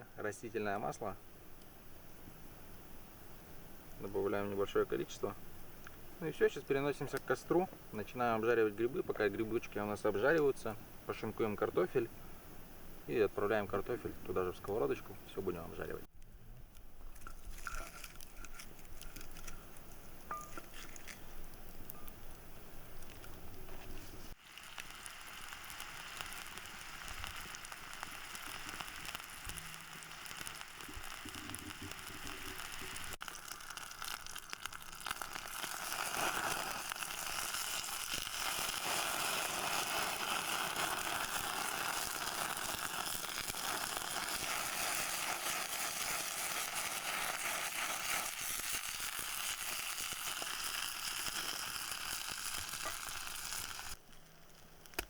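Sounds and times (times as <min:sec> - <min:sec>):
mushrooms sizzling in oil: 0:24.3 - 0:54.0.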